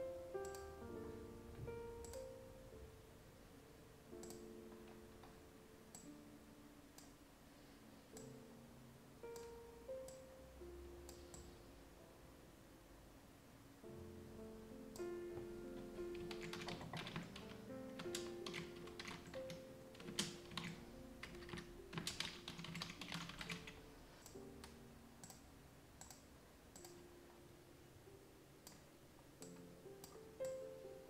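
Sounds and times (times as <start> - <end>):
soft piano music: 0.0 - 31.0
keyboard typing: 15.8 - 25.4.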